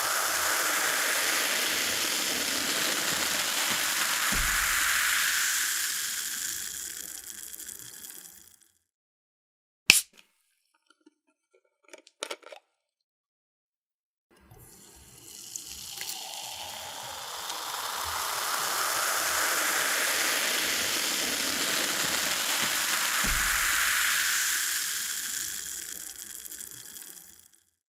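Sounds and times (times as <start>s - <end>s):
cola fizzing pouring into glass: 0.0s - 8.6s, 14.5s - 27.6s.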